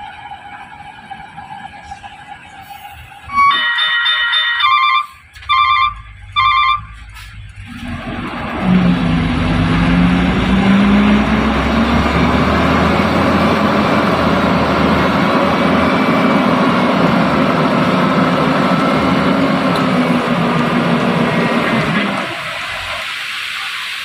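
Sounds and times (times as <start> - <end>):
truck engine running: 0.0 - 23.9
musical air horn blasts: 3.3 - 7.0.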